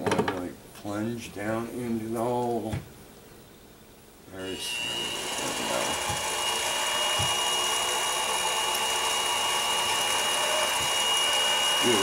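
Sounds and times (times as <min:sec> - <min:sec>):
drill motor whining: 0:04.4 - 0:12.0.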